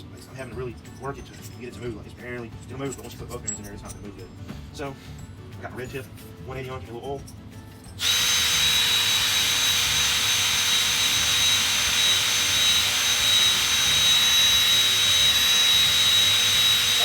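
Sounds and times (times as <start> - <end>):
electric drill whining: 8.0 - 17.0.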